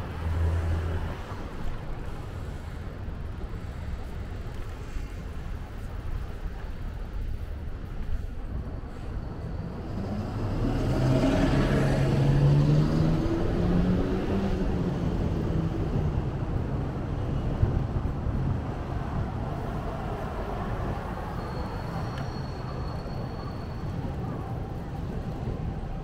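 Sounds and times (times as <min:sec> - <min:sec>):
traffic noise: 0:00.0 - 0:26.0
vehicle passing by: 0:10.2 - 0:15.8.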